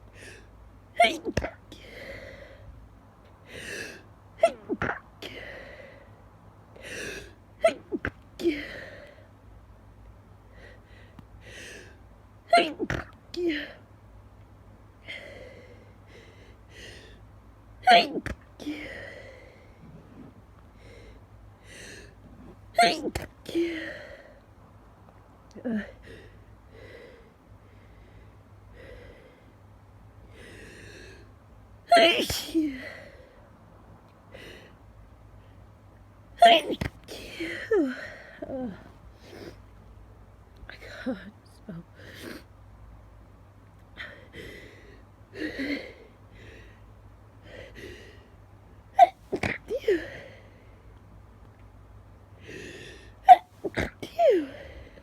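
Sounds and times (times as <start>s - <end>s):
person sneezing stifled: 1.0s - 1.6s, 17.8s - 18.4s, 22.8s - 23.7s, 31.9s - 32.8s, 36.4s - 37.6s, 53.3s - 54.6s
faint breaths: 1.8s - 4.1s, 5.2s - 7.4s, 8.4s - 9.5s, 10.4s - 12.1s, 15.0s - 17.3s, 18.6s - 22.8s, 25.7s - 31.4s, 43.9s - 48.9s, 49.8s - 51.1s, 52.2s - 53.2s, 54.2s - 55.0s.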